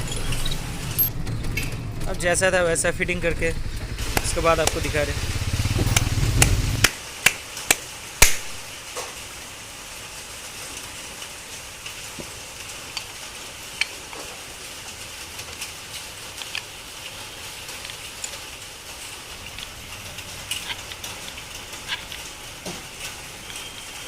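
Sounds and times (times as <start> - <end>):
metal parts clicking and knocking: 15.5 - 24.0.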